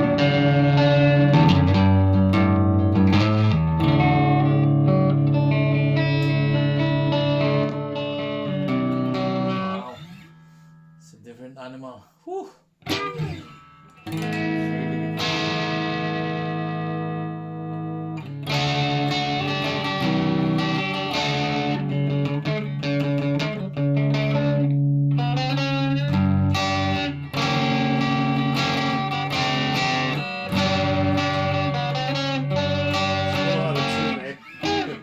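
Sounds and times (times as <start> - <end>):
electric guitar chords: 0.0 - 11.0, 12.8 - 35.0.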